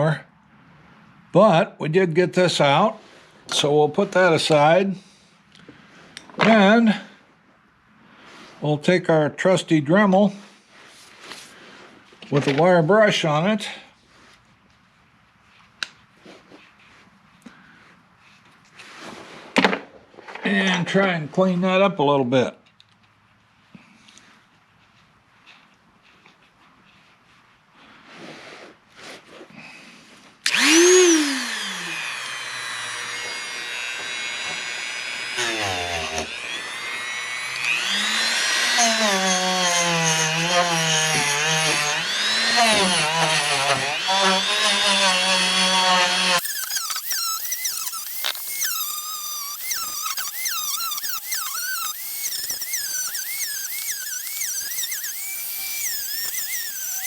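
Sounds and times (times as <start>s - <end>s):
rotary tool whining: 30.4s - 57.0s.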